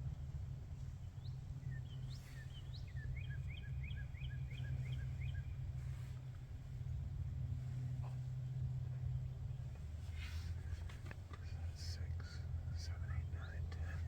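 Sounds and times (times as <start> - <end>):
songbird chirping: 0.8 - 14.0.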